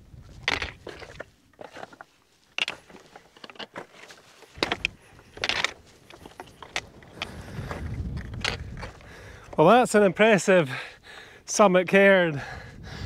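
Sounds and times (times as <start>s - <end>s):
wind rumble on microphone: 0.0s - 1.2s, 4.6s - 10.3s, 12.4s - 13.0s
footsteps on stony path: 0.0s - 11.3s.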